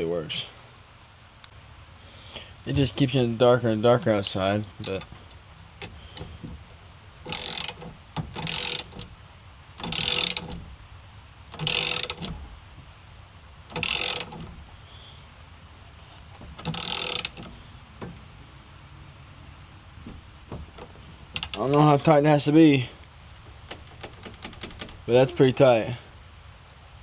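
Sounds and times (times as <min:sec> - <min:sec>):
ratchet wrench clicking: 0:07.3 - 0:09.0, 0:09.8 - 0:10.5, 0:11.6 - 0:12.3, 0:13.7 - 0:14.4, 0:16.6 - 0:17.5.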